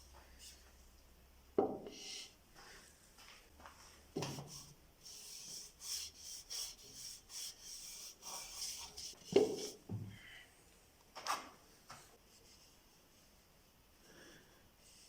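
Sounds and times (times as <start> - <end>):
rubbing strokes on wood: 4.2 - 9.8.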